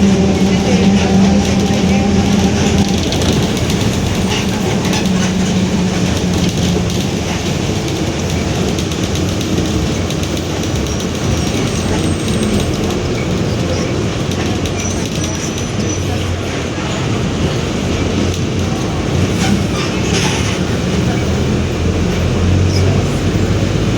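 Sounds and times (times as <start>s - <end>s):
diesel engine running: 0.0s - 14.8s
bus body and panel rattles: 2.6s - 16.0s.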